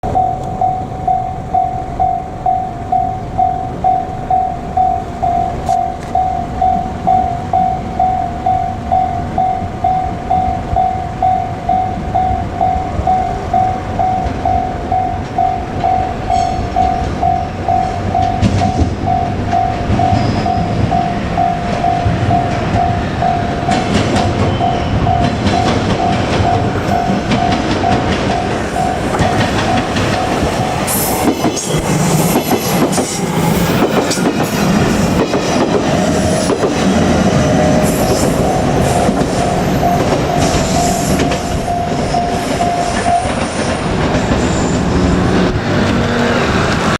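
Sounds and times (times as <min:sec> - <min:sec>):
level crossing bell ringing: 0:00.0 - 0:31.2
train wheels clattering: 0:02.9 - 0:46.9.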